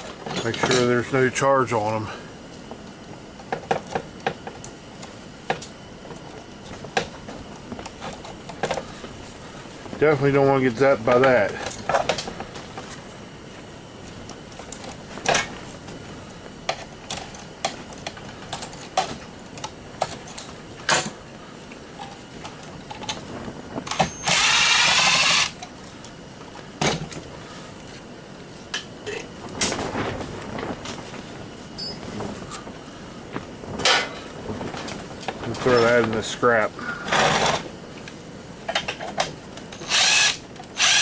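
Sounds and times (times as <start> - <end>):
power drill running: 23.9 - 25.6, 39.7 - 41.0.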